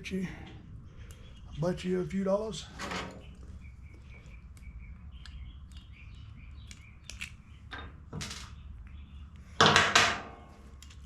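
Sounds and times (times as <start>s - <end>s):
louder clatter of parts: 9.6s - 10.5s.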